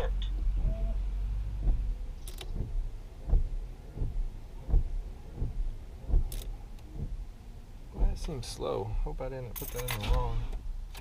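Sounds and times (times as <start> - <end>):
turn signal clicking: 0.0 - 7.3, 7.9 - 8.5.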